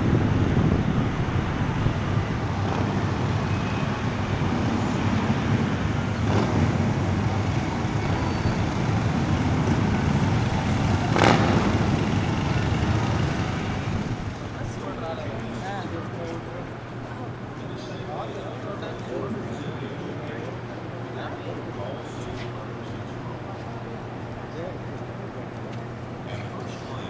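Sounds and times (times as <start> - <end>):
wind buffeting microphone: 0.0 - 17.6
traffic rumble: 0.0 - 27.0.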